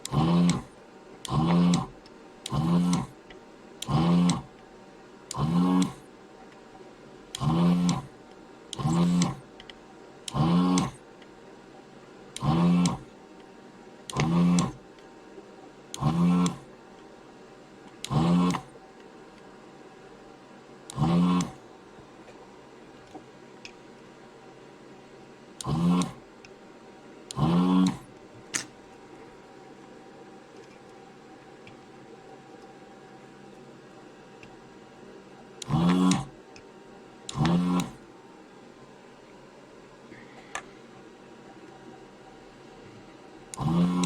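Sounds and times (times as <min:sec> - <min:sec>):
desoldering vacuum pump bursts: 0:00.0 - 0:03.2, 0:03.8 - 0:04.5, 0:05.3 - 0:06.0, 0:07.3 - 0:08.1, 0:08.7 - 0:09.5, 0:10.3 - 0:11.0, 0:12.4 - 0:13.1, 0:14.1 - 0:14.8, 0:15.9 - 0:16.7, 0:18.0 - 0:18.7, 0:20.9 - 0:21.6, 0:25.6 - 0:26.2, 0:27.3 - 0:28.1, 0:35.6 - 0:36.4, 0:37.3 - 0:38.0, 0:43.5 - 0:44.0.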